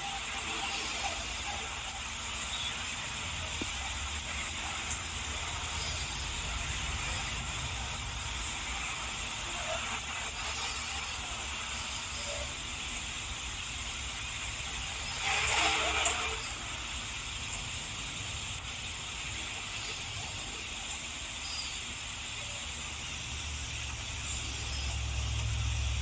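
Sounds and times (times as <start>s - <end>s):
steady hiss: 0.0s - 26.0s
faint high chirps: 24.2s - 25.6s.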